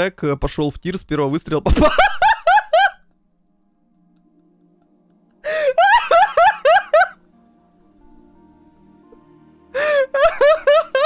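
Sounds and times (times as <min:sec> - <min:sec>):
faint background music: 0:00.0 - 0:11.0
person laughing in high yelps: 0:01.8 - 0:03.0, 0:05.6 - 0:07.2, 0:10.2 - 0:11.0.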